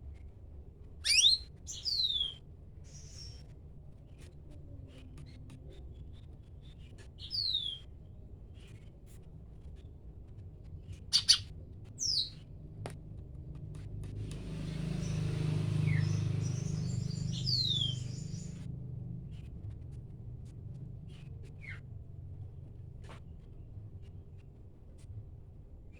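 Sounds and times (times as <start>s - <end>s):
songbird whistling: 1.0s - 2.4s, 7.2s - 7.8s, 11.1s - 12.4s, 15.8s - 18.5s.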